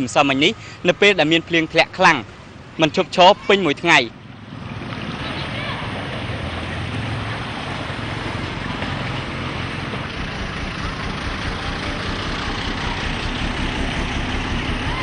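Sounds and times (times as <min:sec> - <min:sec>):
noisy rumble: 0:03.8 - 0:15.0
engine running: 0:04.1 - 0:15.0.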